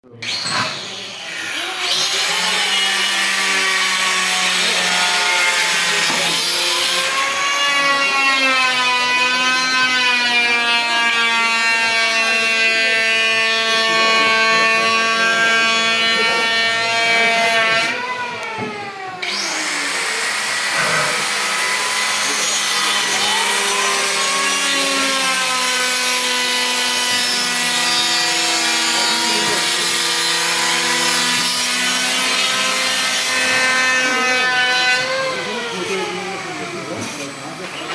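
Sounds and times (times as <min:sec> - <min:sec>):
power tool cutting wood: 0:00.0 - 0:37.9.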